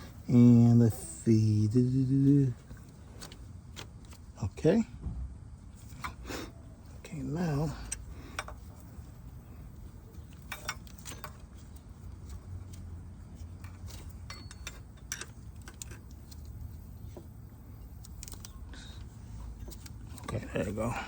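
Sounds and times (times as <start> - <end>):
low steady hum: 0.0 - 21.0
hand tools clicking and tapping: 10.1 - 20.4.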